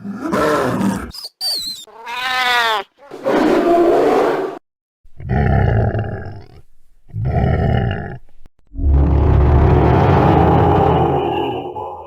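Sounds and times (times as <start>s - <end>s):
monster growl: 5.2s - 12.0s
deep rumbling monster roars: 7.1s - 12.0s
monster howl: 8.8s - 12.0s.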